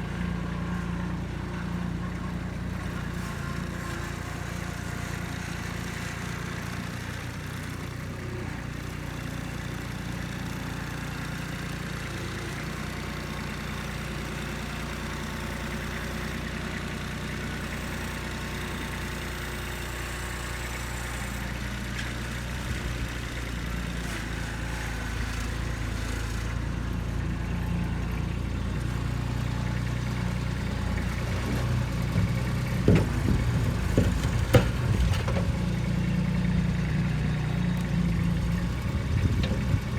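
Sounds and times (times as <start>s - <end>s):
tractor diesel engine running: 0.0s - 39.9s
short knocks: 30.9s - 35.7s, 38.6s - 39.9s.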